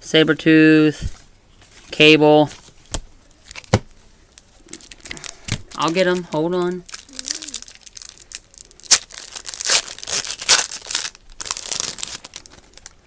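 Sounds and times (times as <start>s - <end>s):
card pack wrapper crinkling: 4.4s - 13.0s.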